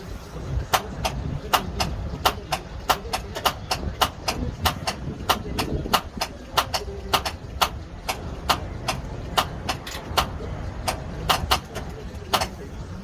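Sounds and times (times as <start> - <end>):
steady low rumble: 0.0 - 13.0
sharp clicks: 0.7 - 12.6.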